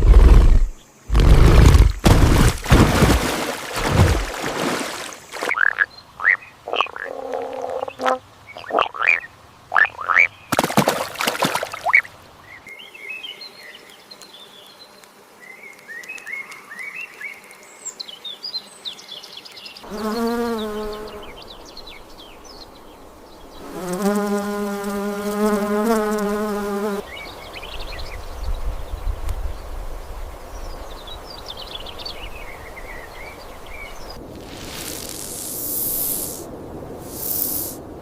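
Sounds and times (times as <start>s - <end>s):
insect buzzing drone: 0.0s - 9.2s, 11.9s - 29.0s, 29.6s - 37.9s
small birds chirping: 5.3s - 10.6s, 11.8s - 36.4s.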